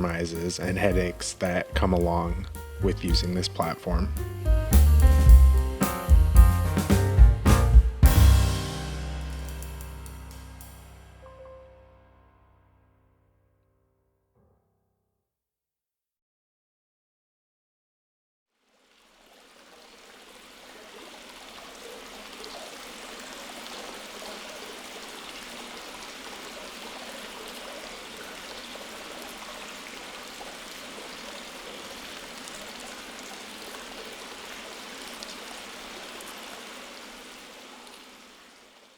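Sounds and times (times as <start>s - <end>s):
rushing water: 0.0s - 6.1s, 18.6s - 38.9s.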